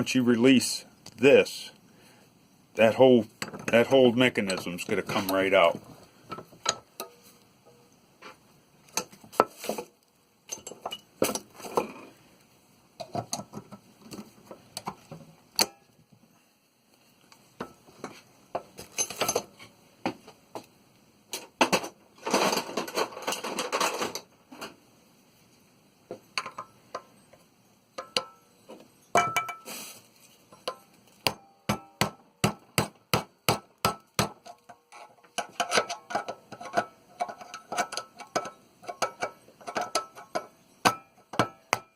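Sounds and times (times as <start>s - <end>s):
metallic taps and clinks: 26.4s - 27.4s, 28.0s - 28.4s.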